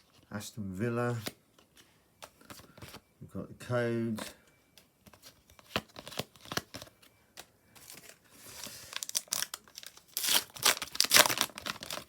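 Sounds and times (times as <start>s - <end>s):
foil packet ripped open: 7.8s - 12.0s.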